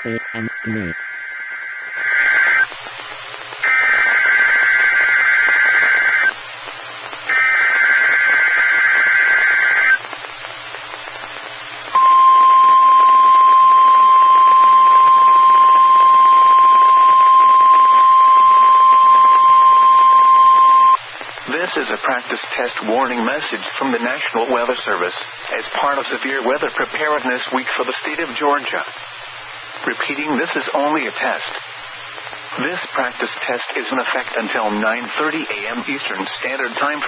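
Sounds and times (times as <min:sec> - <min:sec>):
high alarm tone: 0:00.0 - 0:02.6, 0:12.0 - 0:21.0.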